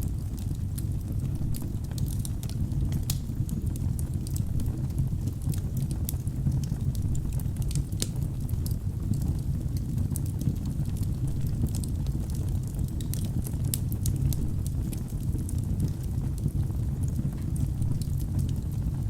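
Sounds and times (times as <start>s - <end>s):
fire rumbling in a fireplace: 0.0s - 19.0s
logs crackling and popping: 0.0s - 19.0s.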